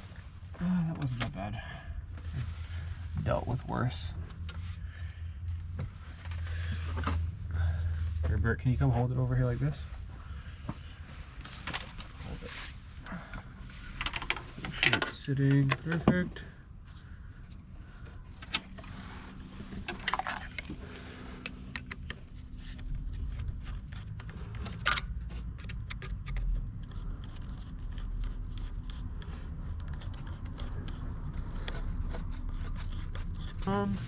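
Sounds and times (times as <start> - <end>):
low steady hum: 0.0 - 34.0
metallic clicks and rattles of tools: 24.2 - 26.7.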